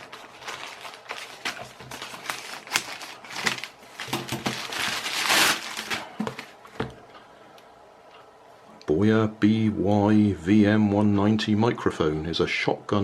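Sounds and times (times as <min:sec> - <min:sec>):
packaging crinkling and rustling: 0:00.0 - 0:07.0.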